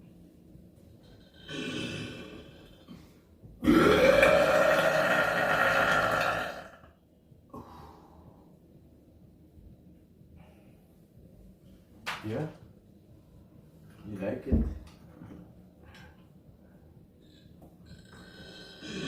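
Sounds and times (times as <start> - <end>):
person burping: 1.4 - 3.0, 3.6 - 6.9, 17.9 - 19.0.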